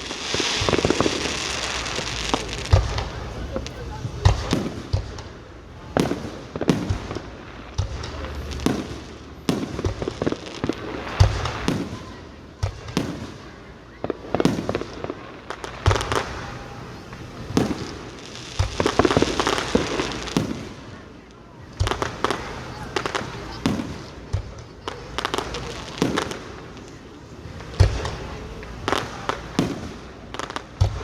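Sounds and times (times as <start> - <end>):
fireworks bangs and booms: 0.0 - 31.0
fireworks crackling: 0.0 - 31.0.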